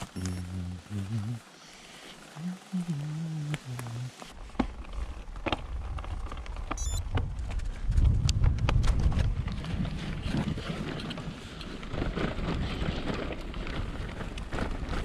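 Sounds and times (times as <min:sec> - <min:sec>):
bicycle rumbling on rough track: 0:00.0 - 0:15.0
wind buffeting microphone: 0:04.8 - 0:15.0.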